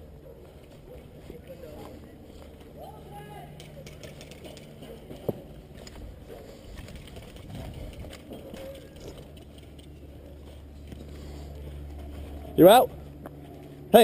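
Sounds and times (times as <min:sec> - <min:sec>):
distant voices: 0:00.0 - 0:14.0
gear handling noise: 0:03.6 - 0:13.9.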